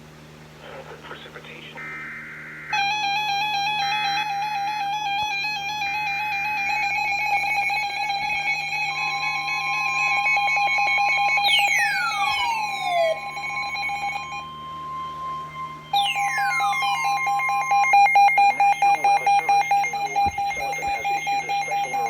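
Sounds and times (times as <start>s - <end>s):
buzzing data tones: 1.4s - 22.0s
warbling electronic alarm: 1.7s - 22.0s
steady higher beep: 1.8s - 22.0s
falling whistle sweeps: 11.2s - 18.8s.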